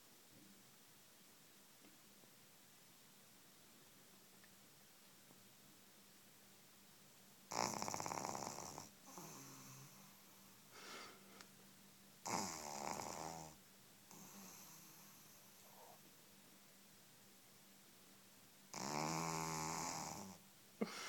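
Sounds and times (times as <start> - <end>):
puppy snoring: 7.5 - 10.6, 12.2 - 16.1, 18.7 - 20.4.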